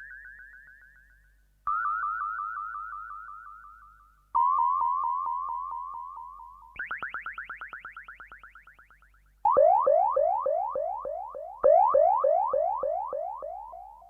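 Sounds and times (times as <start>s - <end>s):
pulsing electronic blips: 9.5s - 14.0s.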